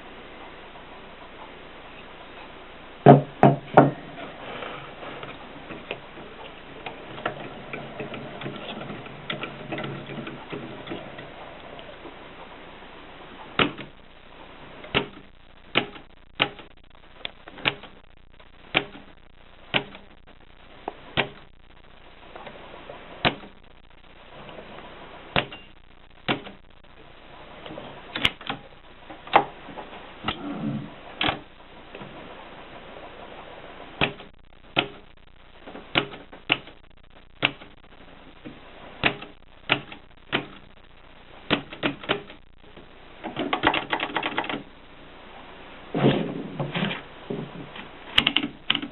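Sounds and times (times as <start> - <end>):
typewriter clacks: 43.4 - 44.6.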